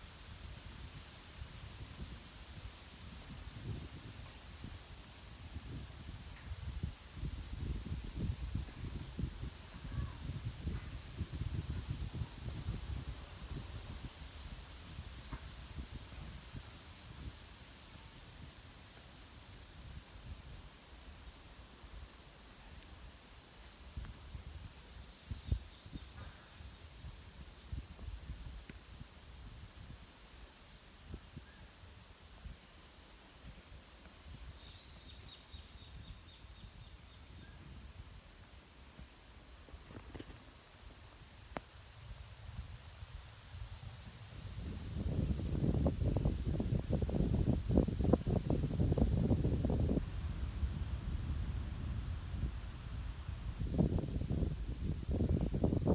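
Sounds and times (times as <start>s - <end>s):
insects chorus: 0.0s - 55.9s.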